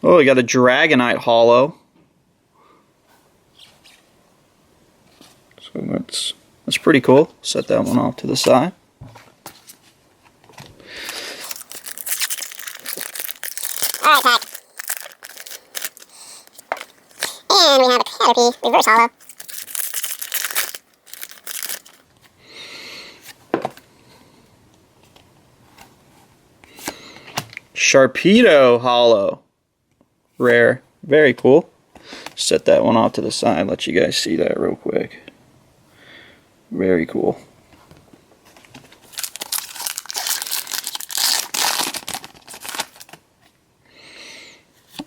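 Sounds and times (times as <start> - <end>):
soft rustle: 5.0 - 5.5
trading cards rustling: 11.0 - 22.0, 39.0 - 43.2
foil wrapper tearing and crinkling: 11.0 - 22.1, 39.0 - 43.2.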